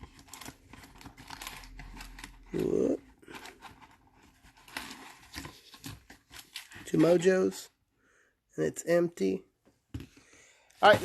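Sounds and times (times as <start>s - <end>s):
wrapper rustling and crinkling: 0.0s - 7.7s.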